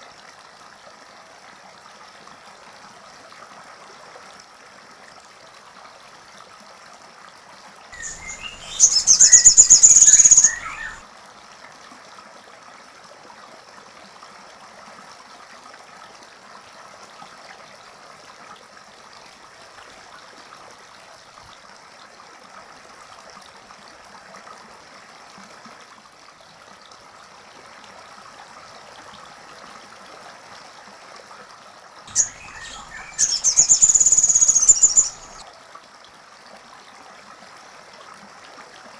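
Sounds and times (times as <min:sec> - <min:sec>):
faint running water hiss: 0:07.7 - 0:11.0, 0:32.1 - 0:35.4
songbird trilling: 0:08.0 - 0:11.0, 0:32.1 - 0:35.4.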